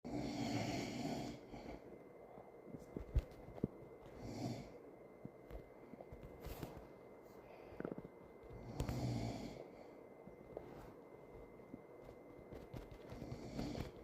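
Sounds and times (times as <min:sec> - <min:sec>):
woman snoring: 0:00.1 - 0:01.9, 0:04.2 - 0:04.8, 0:08.6 - 0:09.8, 0:13.2 - 0:14.0.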